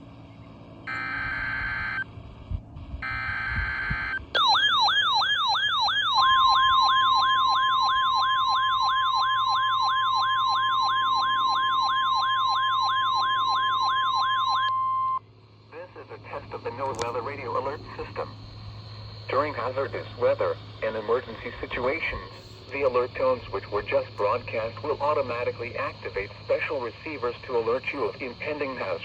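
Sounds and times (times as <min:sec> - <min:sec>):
steady warning tone: 0:00.8 - 0:29.0
siren-like alert tone: 0:00.9 - 0:02.1, 0:03.0 - 0:15.2
buzzy digital data tones: 0:03.0 - 0:14.7, 0:15.8 - 0:29.0.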